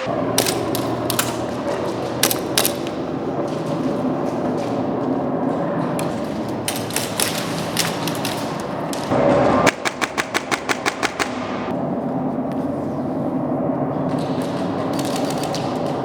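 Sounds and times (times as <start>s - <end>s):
airsoft guns firing: 0.1s - 11.7s, 14.0s - 16.0s.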